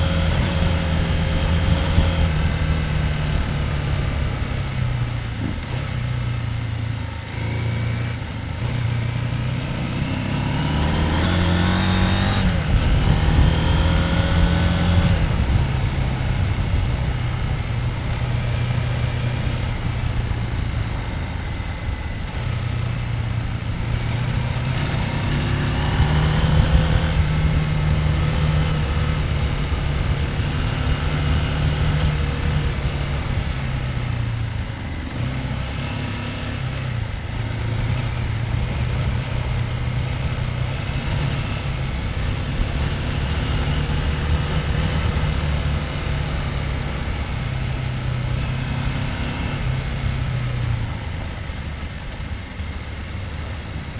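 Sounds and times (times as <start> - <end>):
motorcycle engine running: 0.0 - 53.9.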